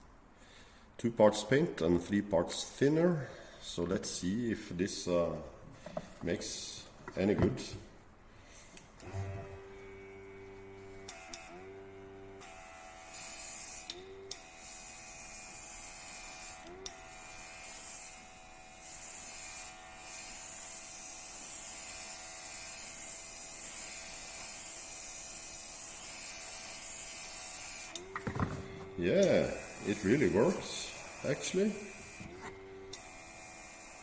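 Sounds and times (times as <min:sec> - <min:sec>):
air compressor motor hum: 0:09.0 - 0:34.0.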